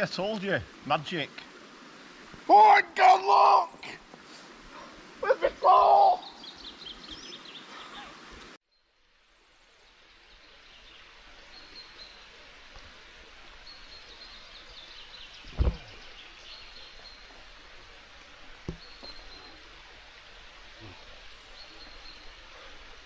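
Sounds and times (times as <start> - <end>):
steady background hiss: 0.0 - 23.0
birds chirping: 3.7 - 8.9, 9.8 - 23.0
dull thump: 15.4 - 16.1, 18.6 - 18.8.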